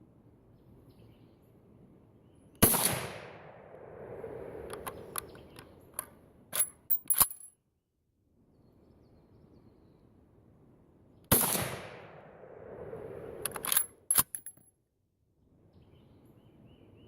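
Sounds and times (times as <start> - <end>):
rifle shot echoing: 2.6 - 5.5, 11.3 - 13.8
rifle action metallic clicks: 4.7 - 7.5, 13.4 - 14.6.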